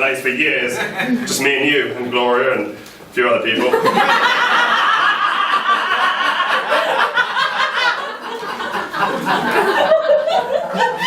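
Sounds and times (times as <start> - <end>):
audience laughing: 3.6 - 11.0.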